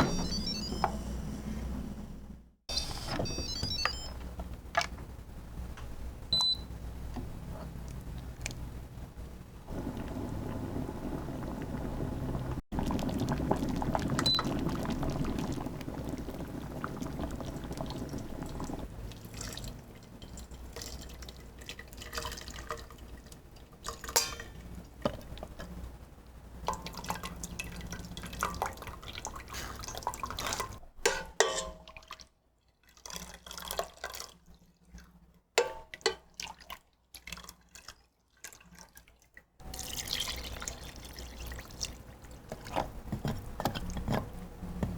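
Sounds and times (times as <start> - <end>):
liquid pouring into a pot: 12.8 - 24.6, 31.4 - 34.5, 36.1 - 42.9
kitchen knocks and clinks: 24.0 - 24.6, 31.0 - 31.8.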